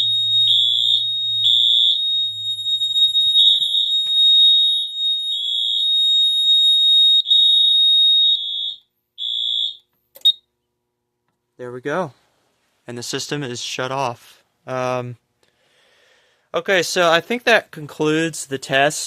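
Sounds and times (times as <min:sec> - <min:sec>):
fire alarm high beeps: 0:00.0 - 0:10.5.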